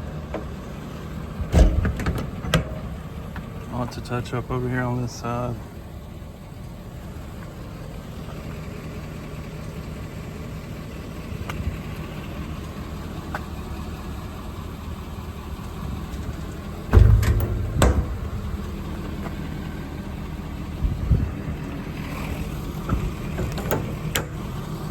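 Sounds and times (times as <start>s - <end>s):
diesel engine idling: 0.0s - 24.9s
loud thumps: 16.9s - 19.4s.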